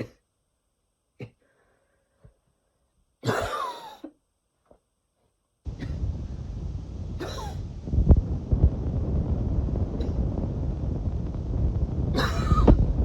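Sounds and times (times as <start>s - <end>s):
low muffled thumps: 5.7s - 13.0s
steady low rumble: 5.7s - 13.0s.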